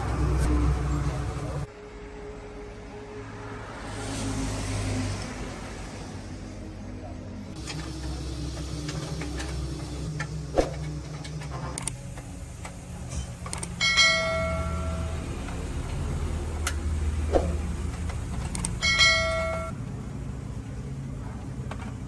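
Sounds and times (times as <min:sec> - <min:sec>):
steady low hum: 0:06.6 - 0:22.0
ringing metallic clanks: 0:13.1 - 0:15.2, 0:18.8 - 0:19.8.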